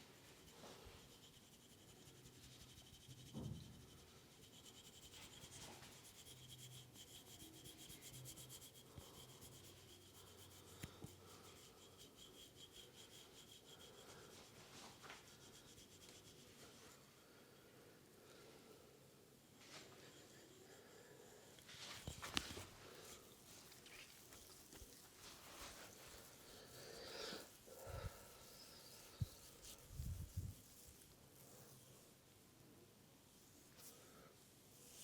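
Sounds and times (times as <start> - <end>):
hands rubbing skin and hair: 21.6 - 31.8.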